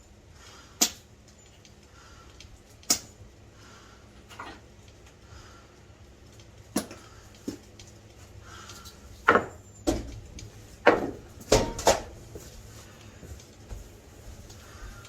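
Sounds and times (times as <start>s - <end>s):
sledgehammer clanking on cast iron: 10.9s - 12.1s.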